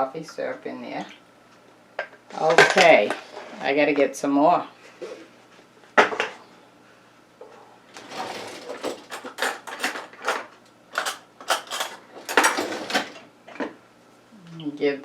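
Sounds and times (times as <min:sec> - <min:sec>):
kitchen handling clatter: 0:02.4 - 0:03.3, 0:08.0 - 0:13.7.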